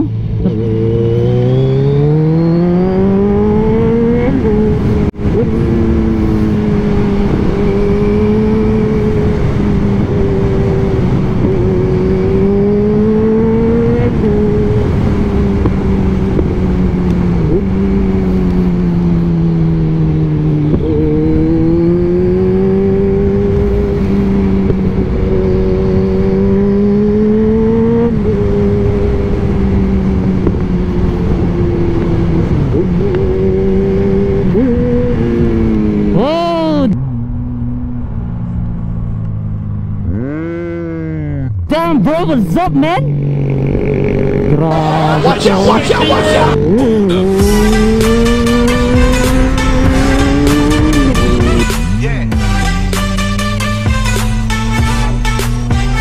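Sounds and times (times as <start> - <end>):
motorcycle engine riding: 0.0 - 56.0.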